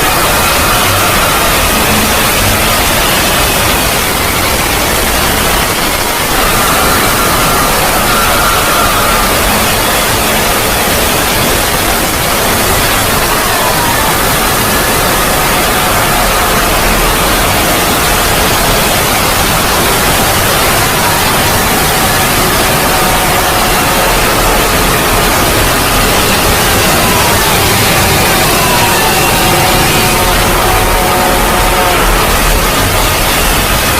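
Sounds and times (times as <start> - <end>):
loud static noise: 0.0 - 33.9.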